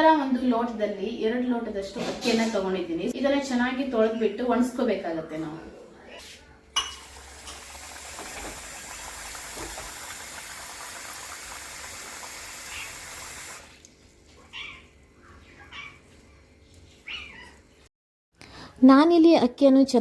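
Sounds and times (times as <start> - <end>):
water running and splashing: 7.0 - 14.5
cat meowing: 14.5 - 14.9, 17.0 - 17.6.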